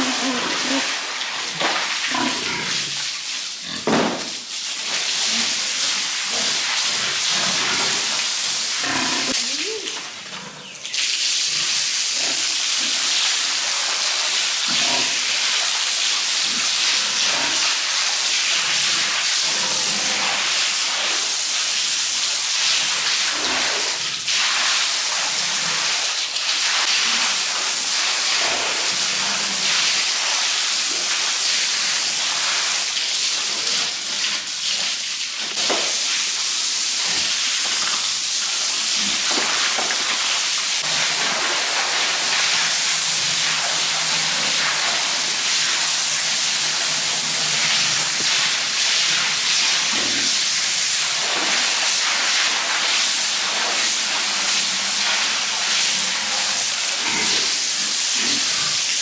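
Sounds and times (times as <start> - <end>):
pigs grunting: 0.0 - 1.0, 2.1 - 2.9, 8.7 - 10.7, 57.0 - 58.8
water spraying from hose: 0.0 - 3.6, 4.2 - 59.0.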